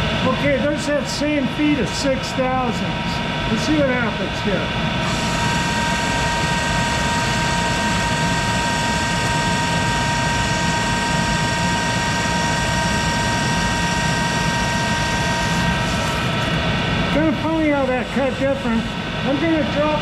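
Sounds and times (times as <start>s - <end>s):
lathe machine whine: 0.0s - 20.0s
metal cutting noise: 4.9s - 19.8s.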